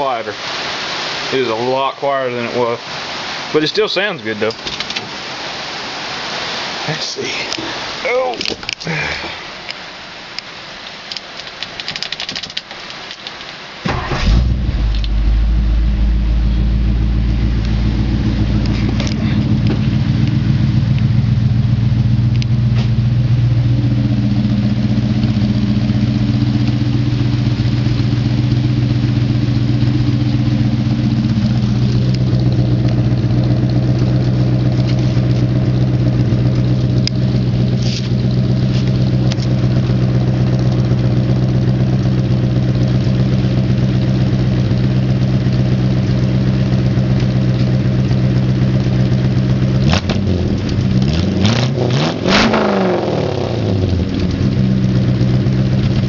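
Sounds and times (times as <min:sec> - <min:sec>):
car engine idling: 0:13.8 - 0:56.0.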